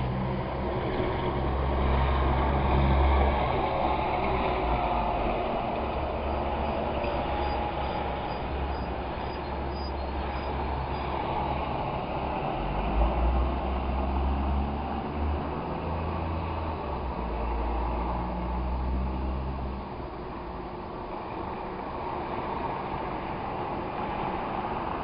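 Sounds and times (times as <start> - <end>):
small bird chirping: 7.0 - 11.1.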